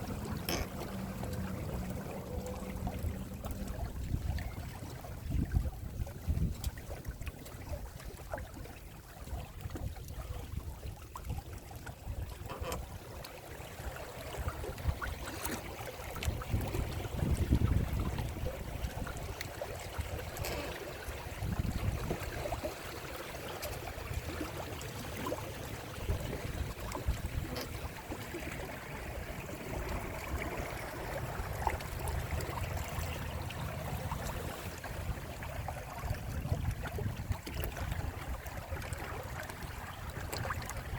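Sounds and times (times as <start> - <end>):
wind buffeting microphone: 0.0 - 6.9, 16.2 - 19.4, 21.3 - 22.6, 25.9 - 40.9
water splashing along a hull: 0.0 - 40.9.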